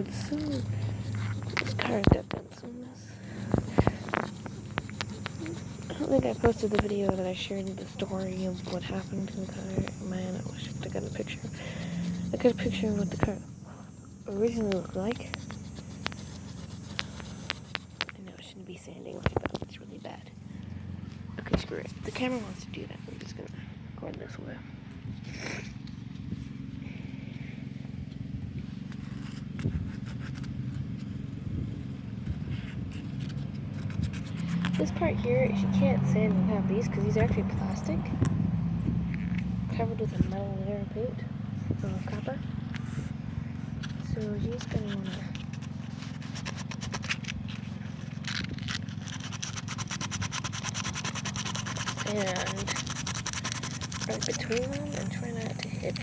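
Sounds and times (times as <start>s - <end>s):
rough sanding strokes on metal rim: 0.0s - 20.2s, 31.8s - 56.0s
steady low hum: 0.0s - 56.0s.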